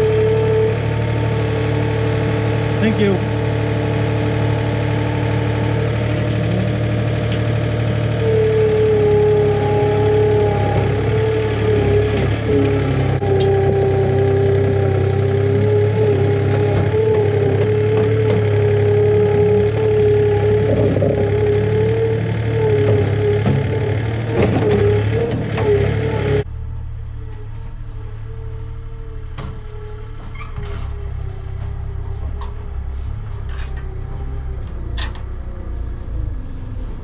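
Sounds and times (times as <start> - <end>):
tractor engine running: 0.0 - 37.0
wavering whine: 26.3 - 37.0.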